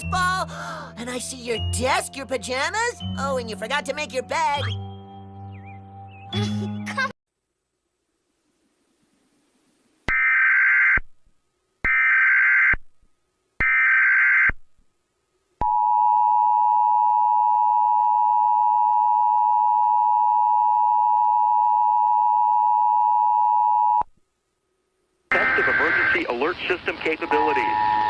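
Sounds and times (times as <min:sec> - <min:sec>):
screeching digital header bursts: 0:25.3 - 0:28.0
steady two-tone attention signal: 0:25.3 - 0:28.0.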